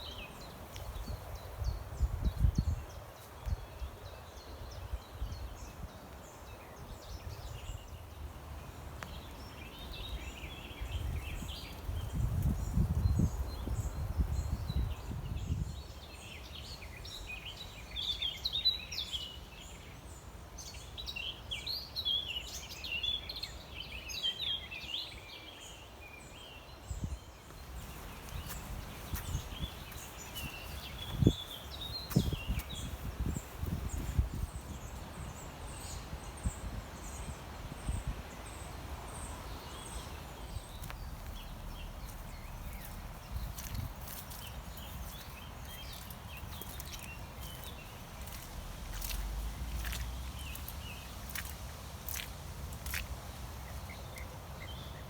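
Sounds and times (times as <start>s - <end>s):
birds singing and chirping: 9.0s - 19.9s, 26.4s - 55.0s
low outdoor rumble: 39.8s - 45.7s, 47.2s - 51.5s.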